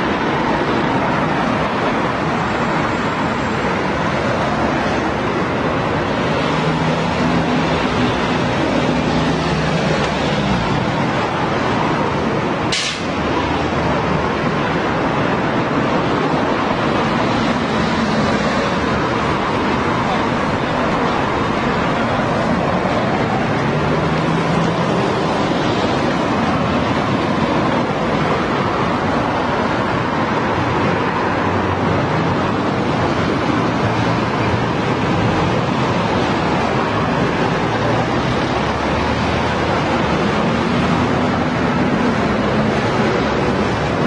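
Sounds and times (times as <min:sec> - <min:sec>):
road traffic: 0:00.0 - 0:44.0.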